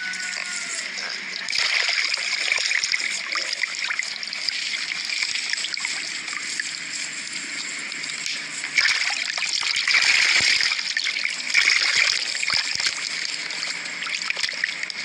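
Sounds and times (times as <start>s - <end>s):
water trickling and splashing: 0.5s - 15.0s.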